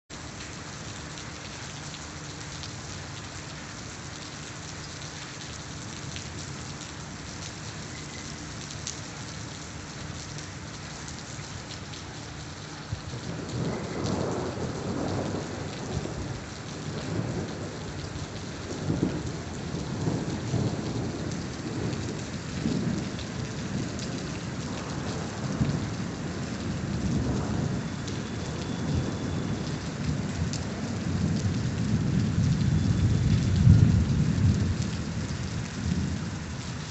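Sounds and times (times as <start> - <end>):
heavy rain: 0.1 - 36.9
low rolling thunder: 12.9 - 36.9.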